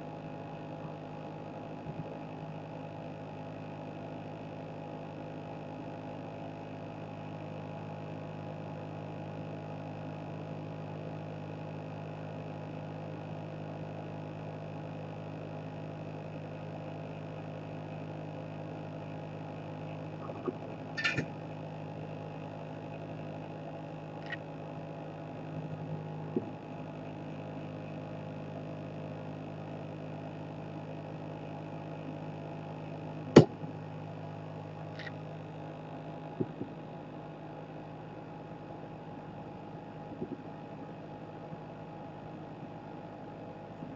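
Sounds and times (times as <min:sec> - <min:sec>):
electrical hum: 0:00.0 - 0:43.9
sharp click: 0:21.0 - 0:21.3.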